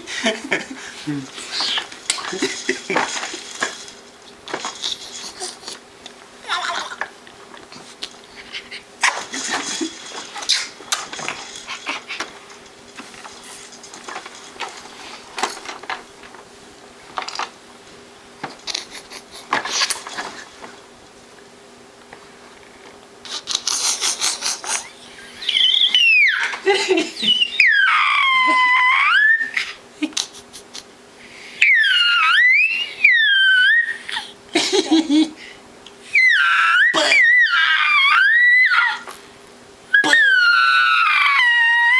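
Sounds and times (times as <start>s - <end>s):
plastic toys clicking and clattering: 1.6s - 5.5s, 9.1s - 16.4s, 17.1s - 17.5s
baby squealing: 6.4s - 7.0s, 25.4s - 26.6s, 27.2s - 29.8s, 31.6s - 34.3s, 36.1s - 39.2s, 39.9s - 41.9s.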